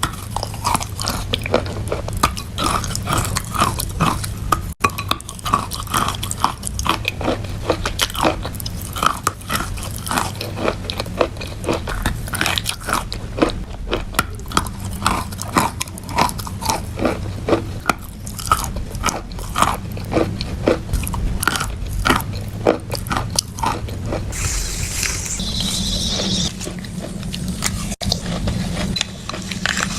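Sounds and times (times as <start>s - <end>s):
chewing wet chalk crunches: 0.0s - 29.9s
short hiss: 24.4s - 25.4s.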